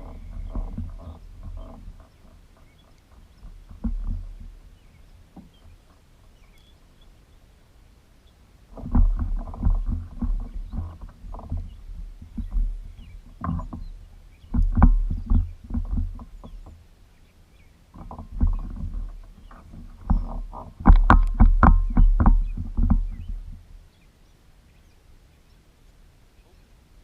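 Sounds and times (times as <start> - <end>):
boat hull thumps and knocks: 0.0 - 4.7, 8.8 - 16.8, 18.0 - 23.7.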